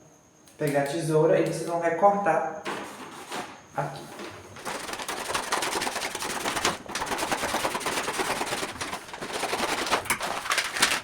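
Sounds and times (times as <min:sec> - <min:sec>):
scissors cutting paper: 0:04.6 - 0:11.0.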